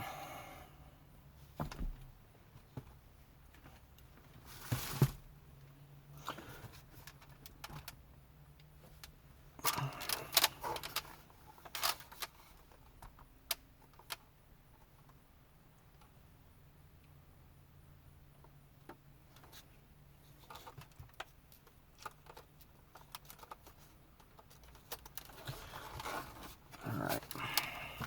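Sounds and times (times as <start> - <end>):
rustling clatter: 3.6 - 5.2, 20.2 - 28.0.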